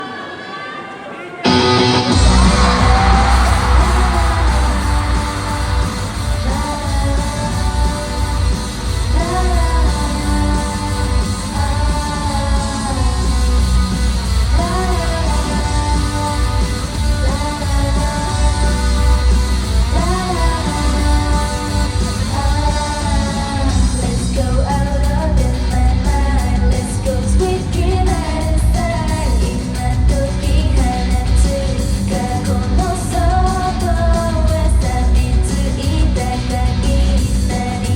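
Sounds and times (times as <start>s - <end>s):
audience cheering and screaming: 0.0s - 24.0s
woman singing lead melody: 0.0s - 37.9s
loud live rock music: 1.4s - 37.9s
heavy bass and drum beat: 1.9s - 37.9s.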